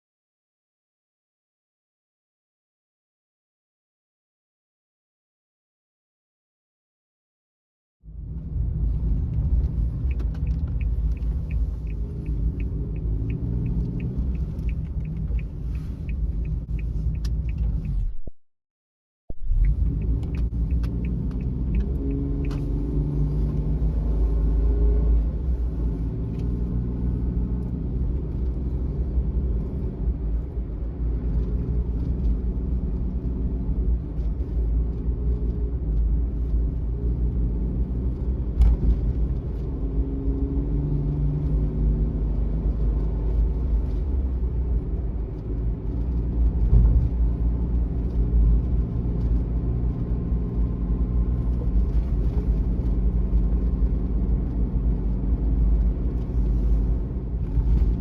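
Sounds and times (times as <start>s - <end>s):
tyre and road rumble: 42.5s - 58.0s.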